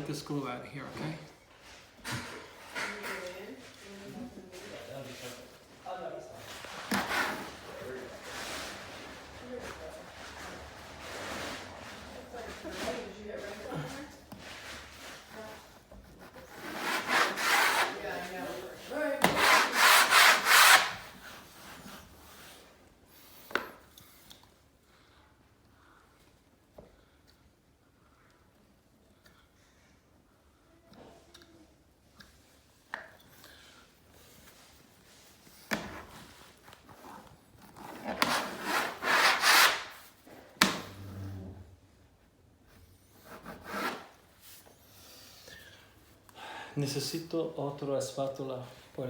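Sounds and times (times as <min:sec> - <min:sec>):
spatula scraping wallpaper: 0:06.4 - 0:22.7, 0:34.2 - 0:41.3, 0:42.7 - 0:45.2.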